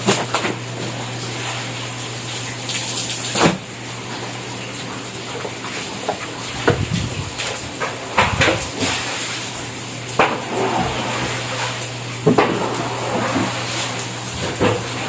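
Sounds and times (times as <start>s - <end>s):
water running and splashing: 0.0s - 15.0s.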